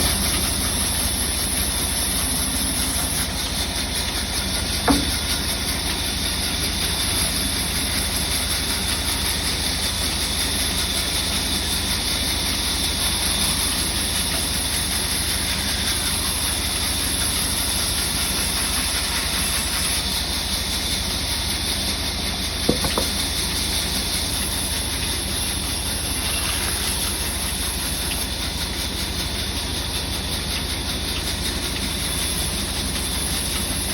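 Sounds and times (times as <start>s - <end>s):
saw humming and hissing: 0.0s - 33.9s
sharp knocks: 4.8s - 5.3s, 22.7s - 23.2s.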